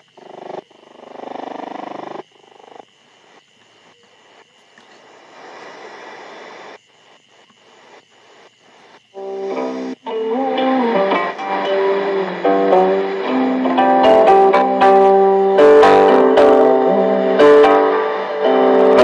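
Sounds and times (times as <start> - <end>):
buzzy radio signal: 0.0 - 19.0
radio static and hiss: 0.0 - 19.0.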